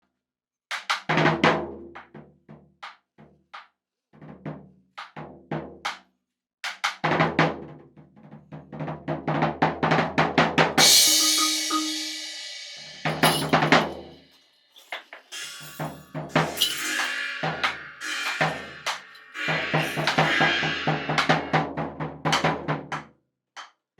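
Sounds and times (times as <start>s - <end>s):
drums playing: 10.8s - 14.2s, 14.8s - 22.8s
cymbal crash: 10.8s - 22.0s.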